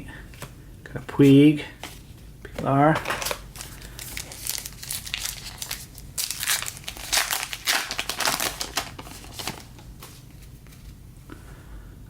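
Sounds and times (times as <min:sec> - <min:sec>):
plastic wrapper crinkling: 0:03.0 - 0:10.9.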